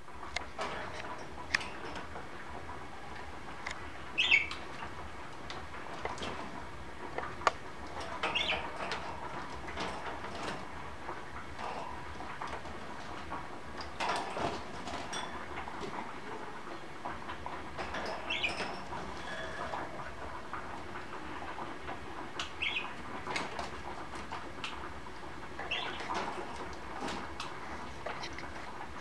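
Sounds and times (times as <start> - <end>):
budgerigar high chirps: 4.2 - 4.5.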